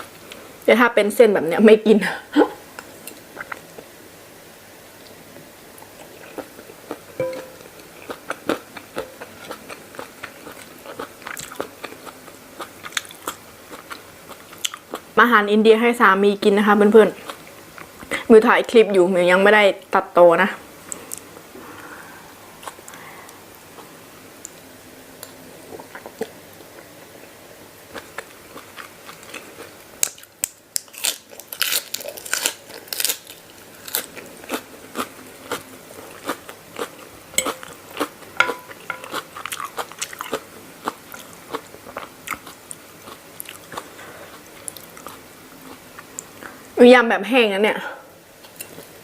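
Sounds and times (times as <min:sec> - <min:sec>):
soft chewing: 0:05.8 - 0:15.1, 0:22.6 - 0:30.3, 0:33.9 - 0:46.6, 0:48.4 - 0:49.0
crisp crunching bites: 0:30.0 - 0:34.6.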